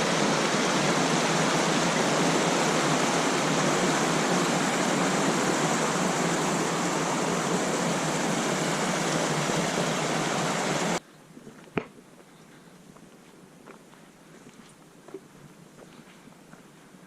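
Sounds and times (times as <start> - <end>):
rushing falling water: 0.0 - 11.0.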